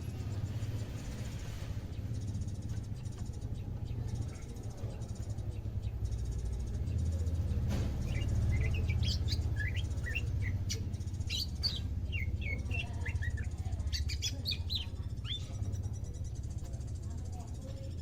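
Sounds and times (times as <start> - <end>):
steady low hum: 0.0 - 18.0
bird chirping and whistling: 8.0 - 16.1.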